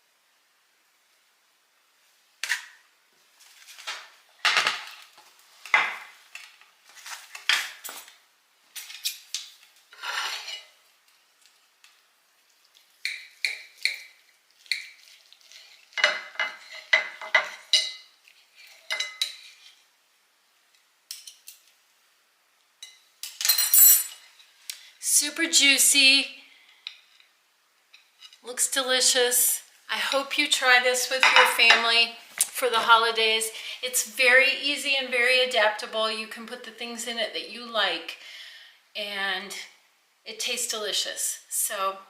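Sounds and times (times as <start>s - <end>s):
knife and fork scraping a plate: 10.0s - 10.8s, 14.6s - 19.8s.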